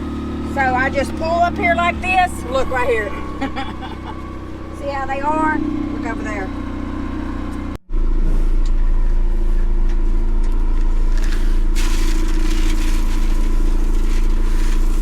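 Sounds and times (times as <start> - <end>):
vehicle engine idling: 0.0 - 15.0
rustling: 11.1 - 15.0.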